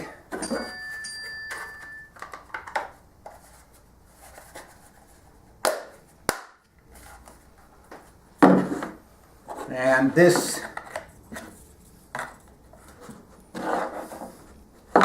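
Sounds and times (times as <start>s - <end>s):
ringing ping: 0.4s - 2.2s.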